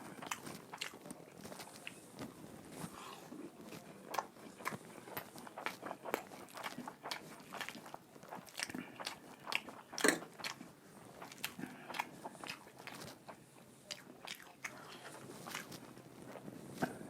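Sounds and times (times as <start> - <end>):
person chewing and biting food: 0.2 - 1.1
wet mouth sounds: 4.1 - 14.8.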